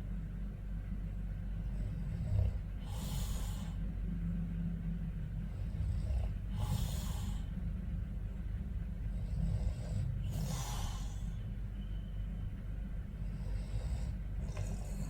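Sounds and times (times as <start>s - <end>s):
man snoring: 1.6s - 3.8s, 5.4s - 7.5s, 9.1s - 11.4s, 13.2s - 15.0s.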